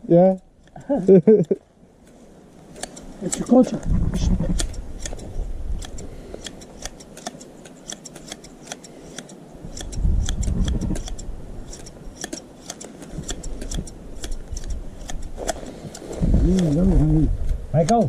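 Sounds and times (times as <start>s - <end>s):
sheep shears snipping fleece: 0.6s - 18.0s
low rumble: 3.8s - 5.8s.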